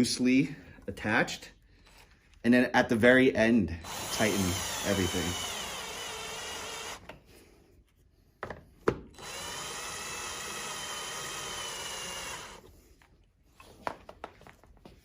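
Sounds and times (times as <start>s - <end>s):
power drill whining: 3.8s - 7.4s, 9.1s - 12.8s.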